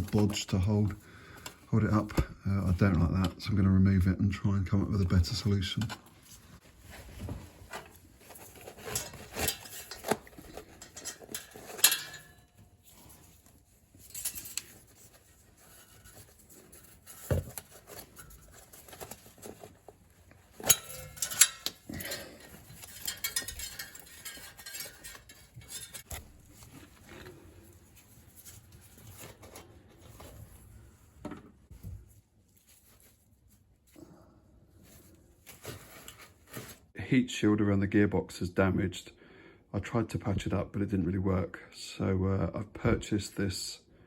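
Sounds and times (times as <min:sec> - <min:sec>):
rustling: 0:05.4 - 0:37.0.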